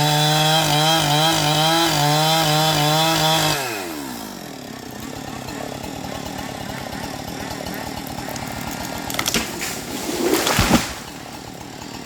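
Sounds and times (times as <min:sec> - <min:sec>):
chainsaw running: 0:00.0 - 0:12.0
tree cracking: 0:00.0 - 0:12.0
rush of branches: 0:04.8 - 0:12.0
tree trunk hitting ground: 0:07.9 - 0:11.6.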